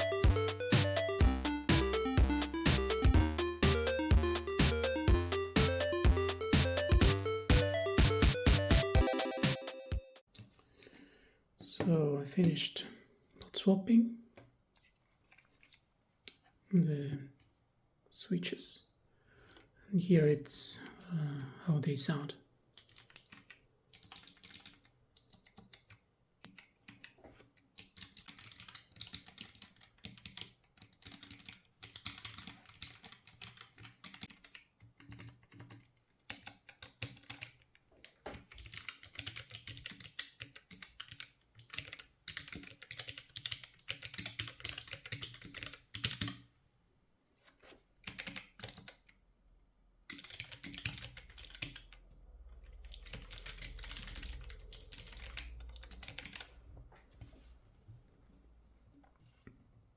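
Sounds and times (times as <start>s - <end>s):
clicky keyboard typing: 22.8s - 27.2s, 27.8s - 37.6s, 38.3s - 46.4s, 48.0s - 49.1s, 50.1s - 52.0s, 52.6s - 56.6s.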